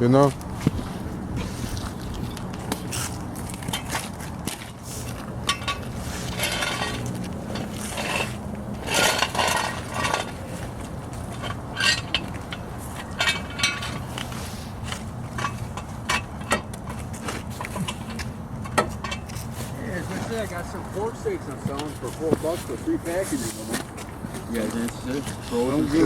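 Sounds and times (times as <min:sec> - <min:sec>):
steady low hum: 0:00.0 - 0:26.0
metal tools clinking and knocking: 0:03.5 - 0:14.2.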